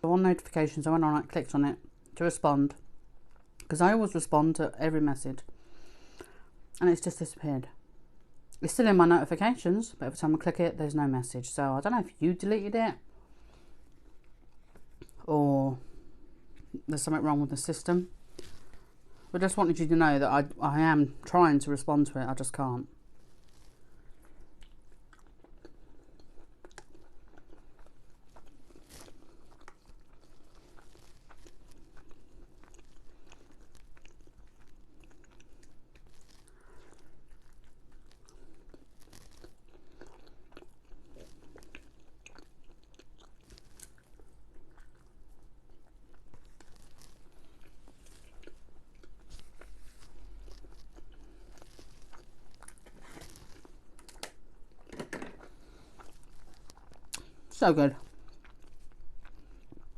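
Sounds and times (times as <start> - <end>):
person chewing and crunching: 2.8 - 3.7, 13.3 - 16.8, 18.1 - 19.3, 22.8 - 59.9.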